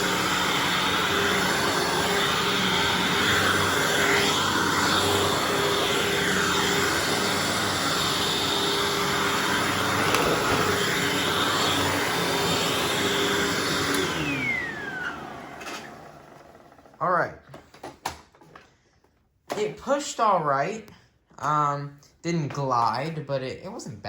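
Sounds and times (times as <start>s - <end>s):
upright vacuum cleaner on carpet: 0.0s - 17.9s.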